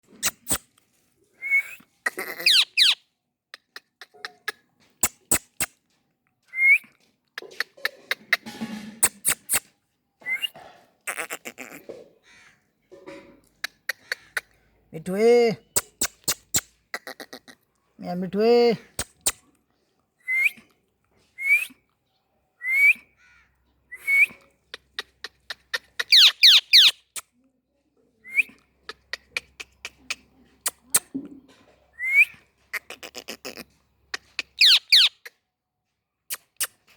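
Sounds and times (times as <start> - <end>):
parakeet screeching: 2.2 - 3.0, 26.1 - 27.0, 34.6 - 35.2
sharp clicks: 15.8 - 16.7, 19.0 - 19.4
parakeet whistling: 26.1 - 27.0, 34.6 - 35.1.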